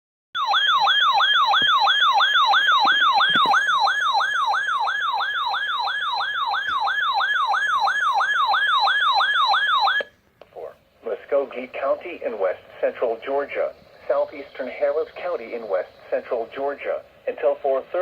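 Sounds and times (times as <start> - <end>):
weather alert siren: 0.4 - 10.1.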